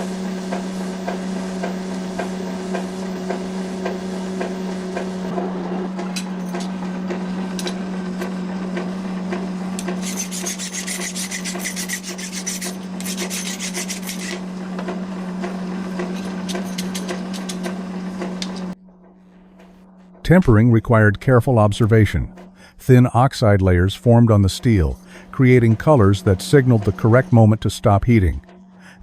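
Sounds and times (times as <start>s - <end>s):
steady machine hum: 0.0s - 29.0s
steel scraped by hand: 9.8s - 14.4s.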